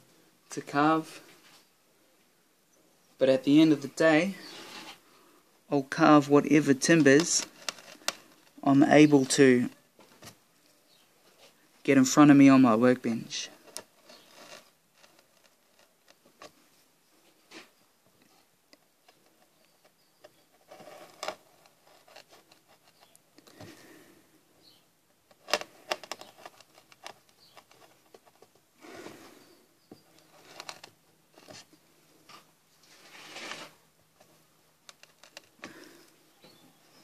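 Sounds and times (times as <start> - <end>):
chisel scraping through wood: 7.4 - 8.5, 13.7 - 16.0
small clicks and knocks: 25.3 - 28.6, 34.2 - 36.6.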